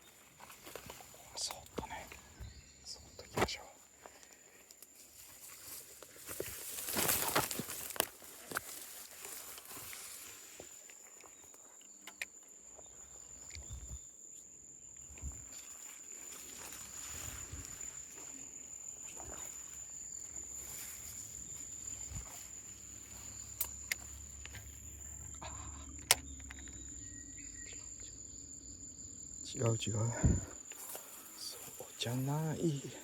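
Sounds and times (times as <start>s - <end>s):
insect trilling: 0.0s - 33.0s
rustling: 4.1s - 11.6s
soft footsteps: 15.1s - 25.2s
sharp clicks: 25.8s - 27.0s.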